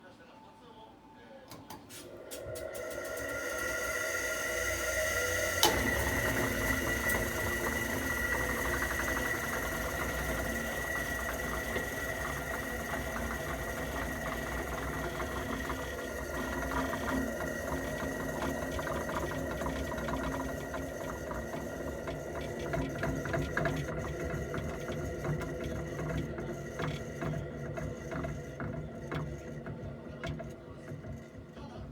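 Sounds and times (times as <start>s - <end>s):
range hood fan whining and rattling: 1.4s - 31.9s.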